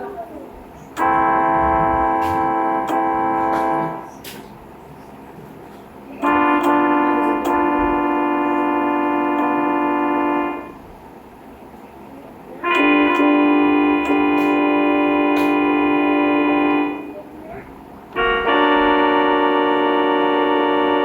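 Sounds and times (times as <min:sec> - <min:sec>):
train air horn blasts: 0:01.0 - 0:04.2, 0:06.2 - 0:10.8, 0:12.6 - 0:17.2, 0:18.2 - 0:21.0.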